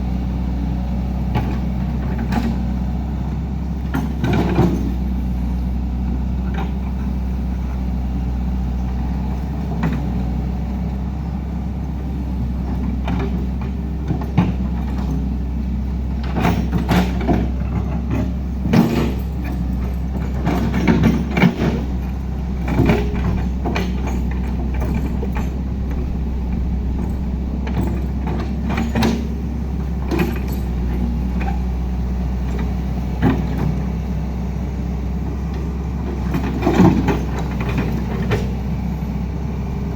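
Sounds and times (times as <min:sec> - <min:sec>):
heavy diesel machinery running: 0:00.0 - 0:39.9
clanks and knocks: 0:16.2 - 0:33.8.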